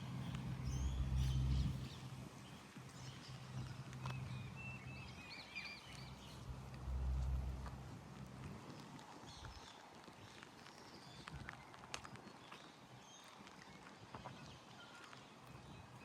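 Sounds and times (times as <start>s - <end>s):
low rumble: 0.0s - 2.4s, 5.9s - 8.8s
small birds chirping: 0.0s - 7.8s.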